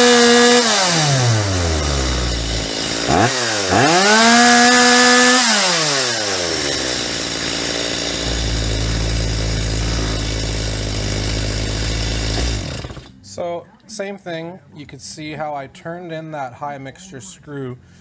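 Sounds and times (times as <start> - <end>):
chainsaw revving and idling: 0.0 - 13.2.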